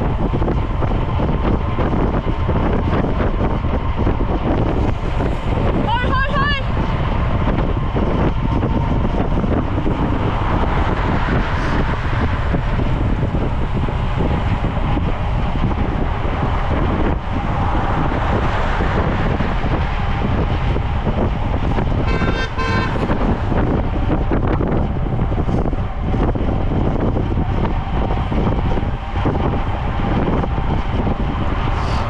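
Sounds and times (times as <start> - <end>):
wind buffeting microphone: 0.0 - 32.0
short horn toot: 22.1 - 23.1.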